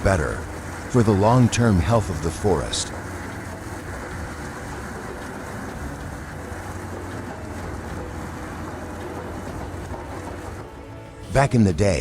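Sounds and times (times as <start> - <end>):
broad rush of noise: 0.0 - 12.0
heavy machine engine running: 0.0 - 12.0.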